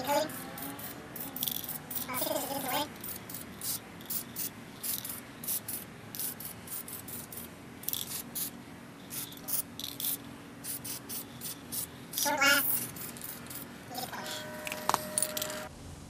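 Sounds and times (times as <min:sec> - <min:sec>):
spray paint can hissing: 0:00.0 - 0:08.5, 0:09.1 - 0:15.5.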